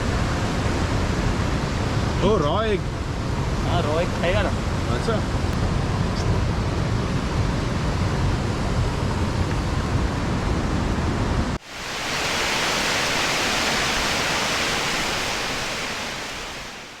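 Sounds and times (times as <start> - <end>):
waterfall rushing: 11.6 - 17.0.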